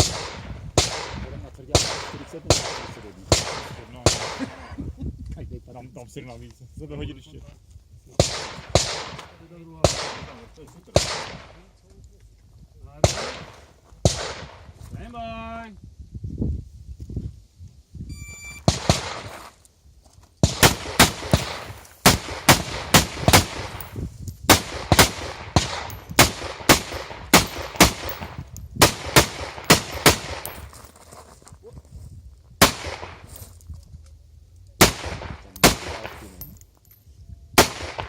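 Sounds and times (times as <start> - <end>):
rifle shots: 0.0 - 1.2, 1.8 - 4.4, 20.4 - 30.7, 32.6 - 33.3, 34.8 - 36.5, 37.6 - 38.0.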